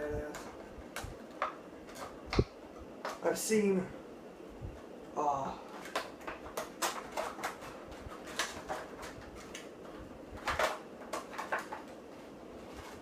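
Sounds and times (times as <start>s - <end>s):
cardboard and plastic crinkling: 5.6s - 13.0s.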